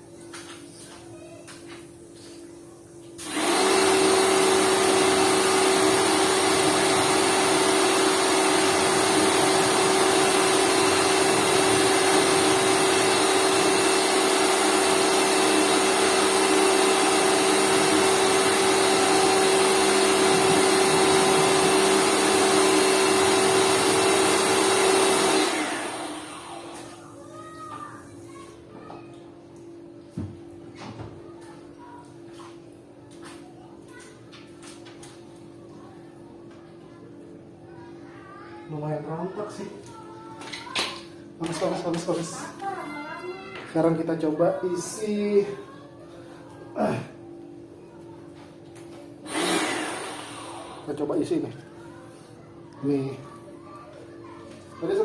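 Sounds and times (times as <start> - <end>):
electric pressure washer humming: 3.2 - 27.1, 49.2 - 51.1.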